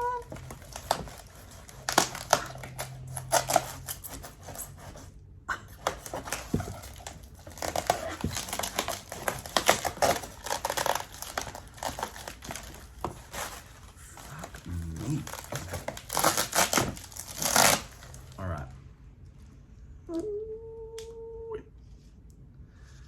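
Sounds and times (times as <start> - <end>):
packaging crinkling and tearing: 0.0 - 5.0, 5.7 - 18.4.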